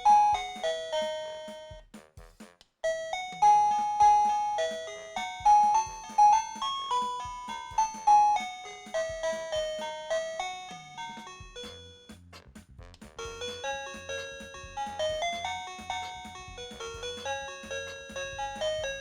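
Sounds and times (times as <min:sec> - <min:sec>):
doorbell chime melody: 0:00.0 - 0:01.7, 0:02.9 - 0:12.0, 0:13.3 - 0:19.0.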